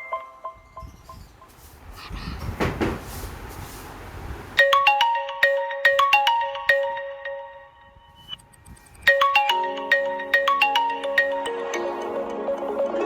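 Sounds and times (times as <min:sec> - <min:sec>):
mobile phone ringtone melody: 0:00.0 - 0:00.9, 0:04.6 - 0:13.0.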